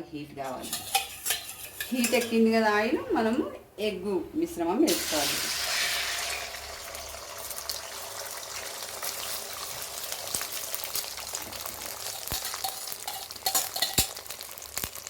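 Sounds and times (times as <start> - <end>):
egg sizzling in hot oil: 0.6 - 2.3, 4.9 - 15.0.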